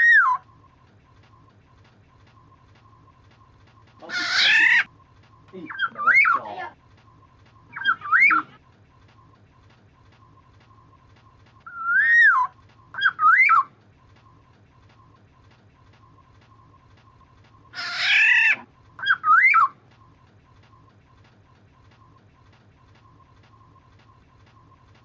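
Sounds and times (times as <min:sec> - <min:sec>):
fluty whistled bird phrases: 0:00.0 - 0:00.5, 0:02.5 - 0:08.6, 0:10.1 - 0:14.4, 0:16.1 - 0:20.2
faint steady hum: 0:00.0 - 0:25.0
harsh bird call: 0:04.0 - 0:04.9, 0:07.7 - 0:08.6, 0:17.7 - 0:19.8.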